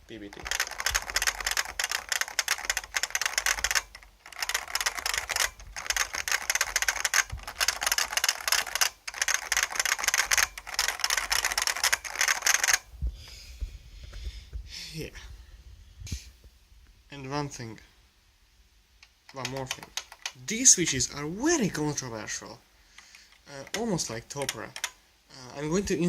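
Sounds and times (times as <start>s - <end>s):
fast typing on clicky keyboard: 0.1s - 12.8s, 19.4s - 21.0s, 23.5s - 25.0s.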